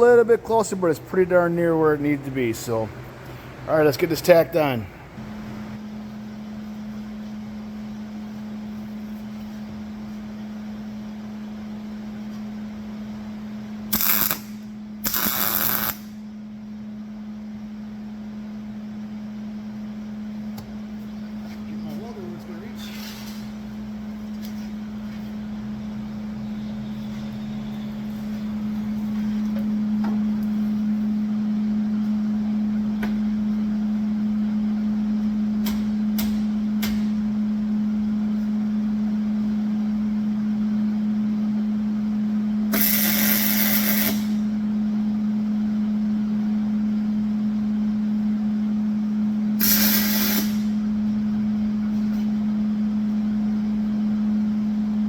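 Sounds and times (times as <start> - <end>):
low machine hum: 0.0 - 55.0
crackling welding arc bursts: 13.9 - 16.2, 42.7 - 44.4, 49.6 - 50.7.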